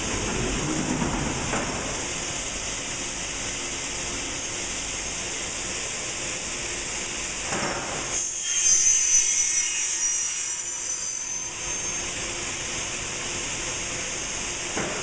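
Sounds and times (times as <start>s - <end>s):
machine high whine: 8.1s - 14.8s.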